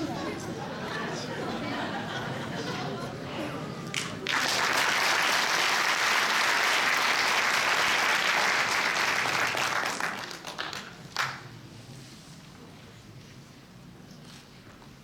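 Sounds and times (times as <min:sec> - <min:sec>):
audience applauding: 0:03.9 - 0:11.5.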